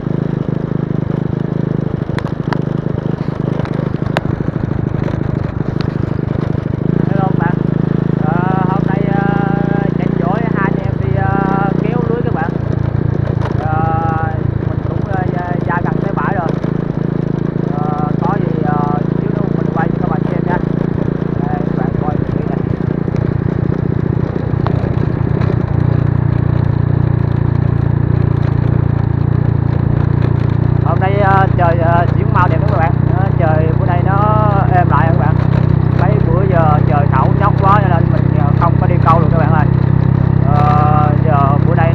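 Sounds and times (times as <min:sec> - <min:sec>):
small engine pulsing: 0:00.0 - 0:41.9
sharp clicks: 0:01.8 - 0:07.6, 0:10.0 - 0:31.6.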